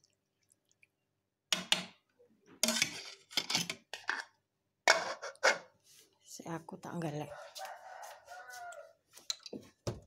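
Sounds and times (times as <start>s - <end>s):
pot and utensils clattering: 2.6s - 5.7s.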